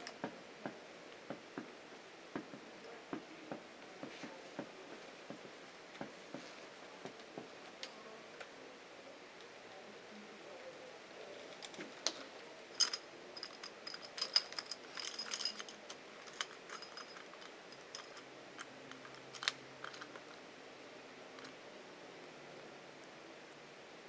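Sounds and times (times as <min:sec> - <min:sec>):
small metal objects clinking: 0:12.7 - 0:20.4.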